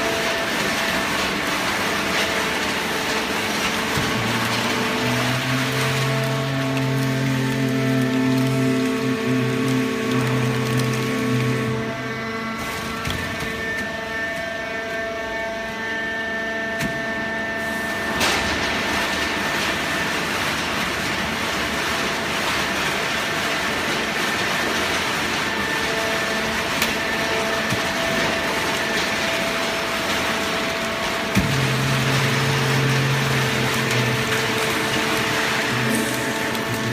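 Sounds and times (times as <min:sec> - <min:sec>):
high machine whine: 0:00.0 - 0:36.9
hydraulic baler machinery humming: 0:00.0 - 0:36.9.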